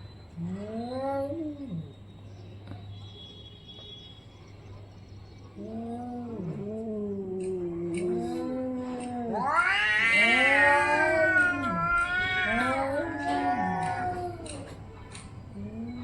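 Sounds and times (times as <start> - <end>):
cats yowling in a fight: 0.4 - 1.9, 5.6 - 14.8.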